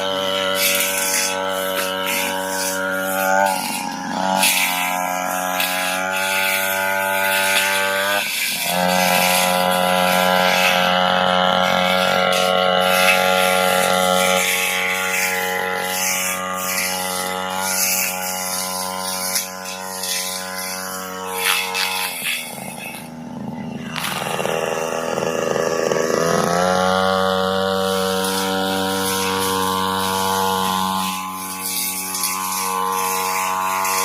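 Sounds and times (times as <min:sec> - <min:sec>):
brush cutter engine running: 0:00.0 - 0:34.0.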